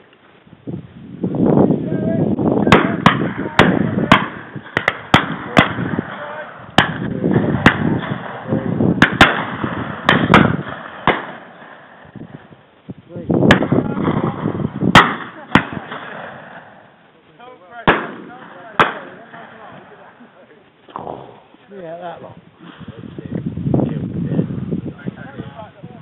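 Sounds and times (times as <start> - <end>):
shotgun shots: 2.7 - 12.4, 13.5 - 16.8, 17.8 - 19.8.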